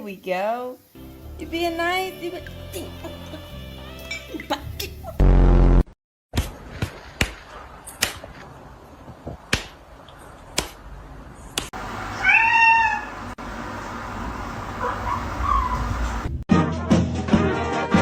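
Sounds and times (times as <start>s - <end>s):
cat meowing: 12.2s - 13.2s.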